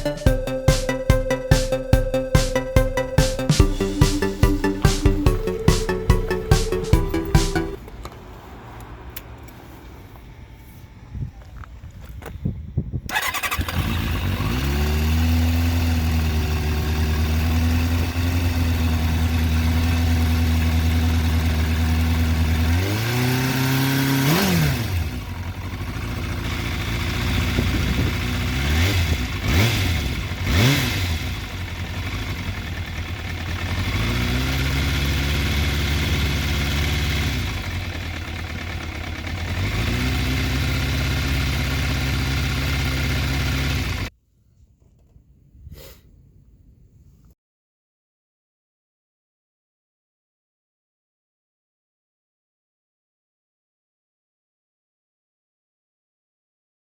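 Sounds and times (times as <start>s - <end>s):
motorcycle engine idling and revving: 2.6s - 44.1s.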